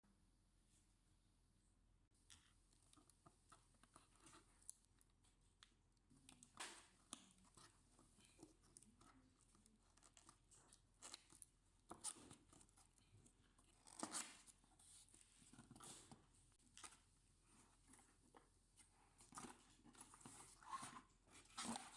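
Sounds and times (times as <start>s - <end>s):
rustling scrapes: 13.6s - 21.9s.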